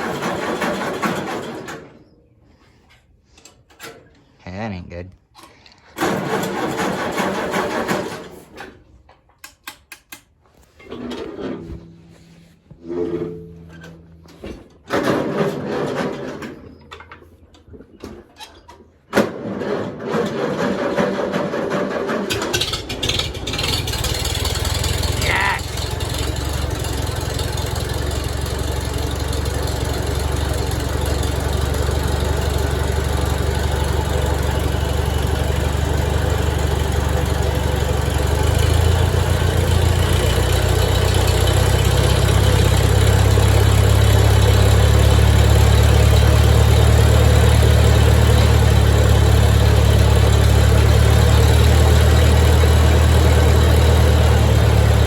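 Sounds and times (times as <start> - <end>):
vehicle engine running: 22.5 - 55.0.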